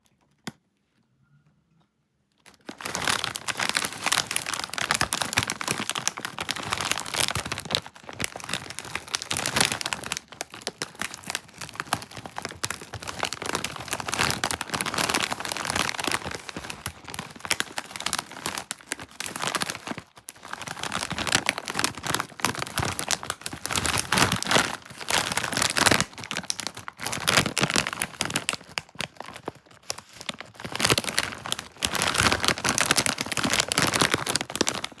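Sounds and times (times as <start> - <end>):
plastic packaging crinkling: 2.4 - 35.0.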